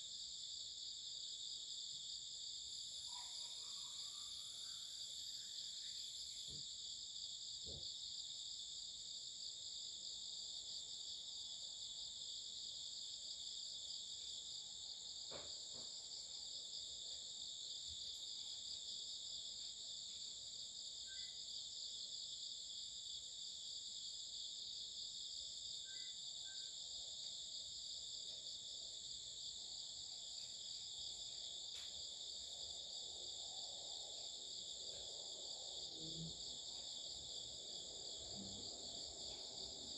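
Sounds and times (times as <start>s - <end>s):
insects trilling: 20.9s - 21.7s.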